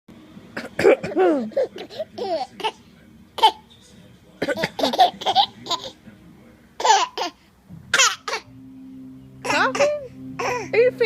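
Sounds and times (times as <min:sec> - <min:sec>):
baby giggling: 0:01.3 - 0:02.8, 0:04.6 - 0:06.0, 0:06.8 - 0:07.4.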